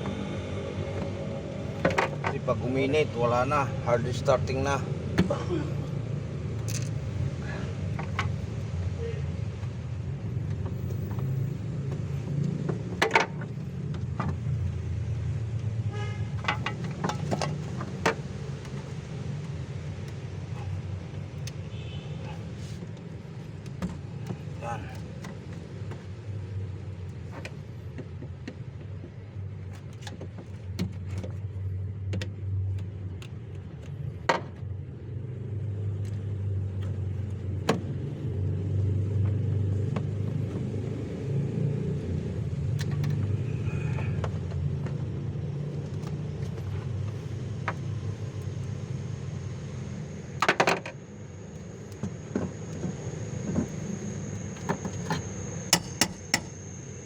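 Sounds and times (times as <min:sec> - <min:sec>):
high steady whine: 0:00.0 - 0:07.1, 0:42.4 - 0:57.0
vehicle rumble: 0:00.0 - 0:57.0
hand tools clicking and knocking: 0:16.4 - 0:20.8, 0:54.6 - 0:56.6.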